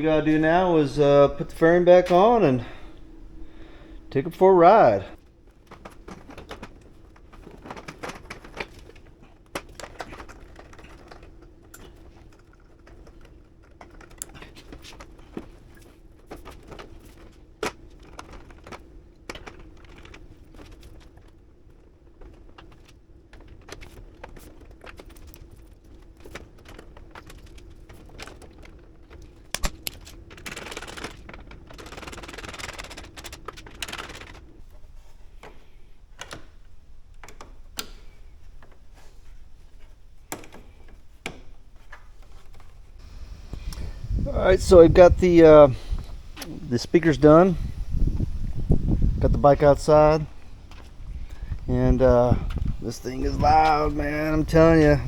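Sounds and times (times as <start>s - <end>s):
rustling: 0.0s - 55.0s
steady low hum: 0.0s - 55.0s
plastic parts clicking and tapping: 5.2s - 42.8s.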